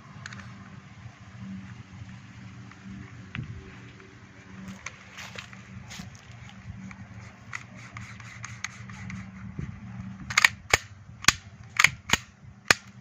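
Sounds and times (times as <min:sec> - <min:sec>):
gas pistol shots: 0:10.3 - 0:12.9.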